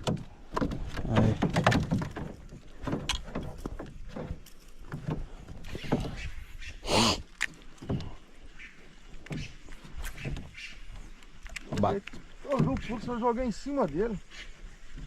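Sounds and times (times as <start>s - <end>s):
gear knocking in a boat: 0.0s - 6.4s, 9.1s - 14.1s.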